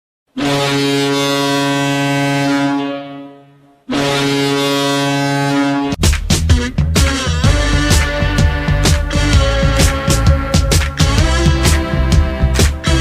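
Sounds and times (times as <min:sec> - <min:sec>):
goal horn blowing long blasts: 0:00.3 - 0:13.0
goal song music: 0:05.6 - 0:13.0.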